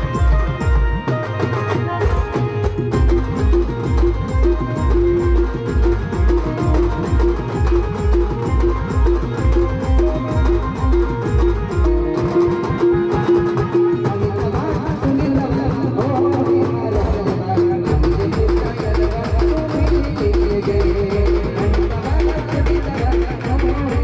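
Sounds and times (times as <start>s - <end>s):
keyboard melody: 0.0s - 24.0s
light percussion: 0.0s - 24.0s
heavy drum beat: 2.0s - 24.0s.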